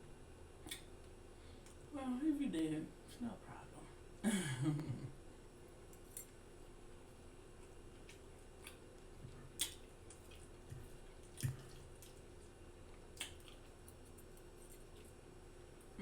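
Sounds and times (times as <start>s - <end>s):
wet mouth smacks eating: 0.6s - 0.9s, 7.6s - 15.2s.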